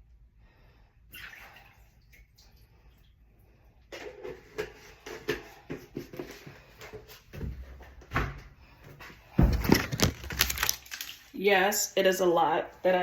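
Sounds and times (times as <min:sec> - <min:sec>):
heavier thumps: 0:09.3 - 0:10.2
handling knocks and clicks: 0:09.4 - 0:11.0.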